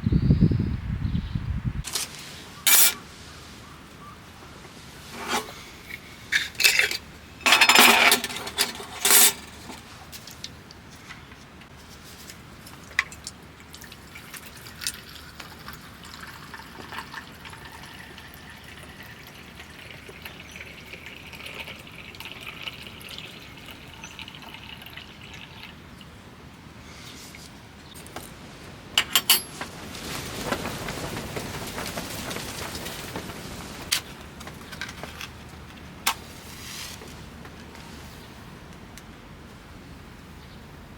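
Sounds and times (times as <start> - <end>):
metal cookware clattering: 2.7 - 3.0, 5.2 - 9.8, 29.0 - 29.6
liquid being poured: 13.0 - 25.8
clinks: 29.0 - 29.6.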